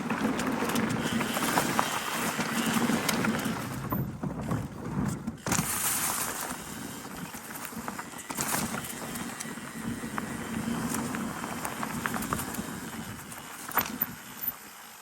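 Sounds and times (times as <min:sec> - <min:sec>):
tyres crunching over dirt: 0:00.0 - 0:14.4
bike rattling: 0:00.0 - 0:15.0.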